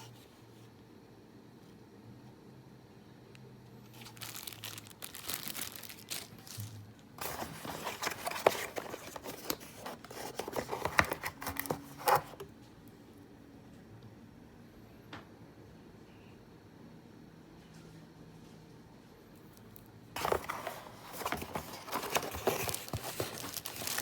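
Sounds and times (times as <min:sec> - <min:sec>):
packaging crinkling and tearing: 0:03.9 - 0:12.4, 0:20.2 - 0:24.0.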